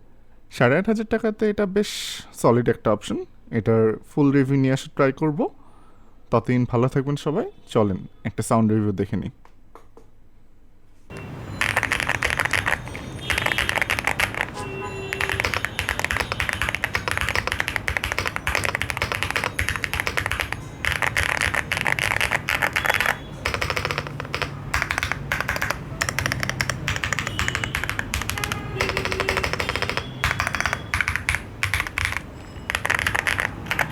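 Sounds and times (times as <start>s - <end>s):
mechanical keyboard typing: 11.1s - 33.9s.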